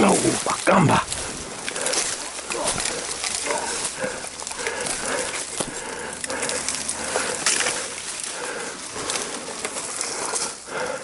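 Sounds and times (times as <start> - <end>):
footsteps through brush and leaves: 0.0 - 11.0.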